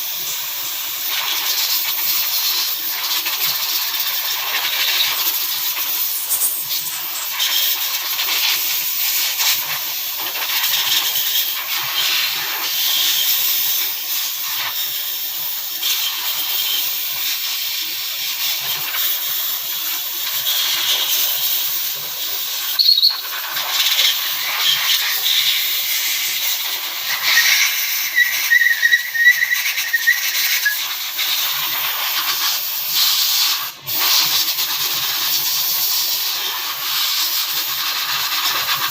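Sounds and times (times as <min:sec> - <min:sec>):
loud spraying hiss: 0:00.0 - 0:38.9
squeaky chirps: 0:22.8 - 0:23.3, 0:27.4 - 0:30.8.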